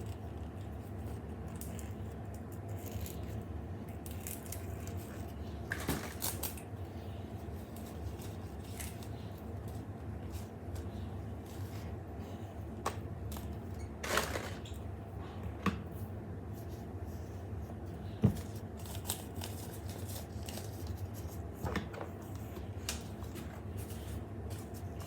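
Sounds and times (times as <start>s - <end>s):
steady low hum: 0.0s - 25.0s
packaging clicks and rustles: 18.4s - 21.3s.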